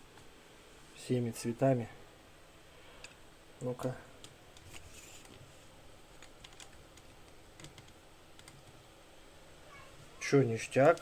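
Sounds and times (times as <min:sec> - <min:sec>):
faint keyboard keystrokes: 0:06.1 - 0:08.8.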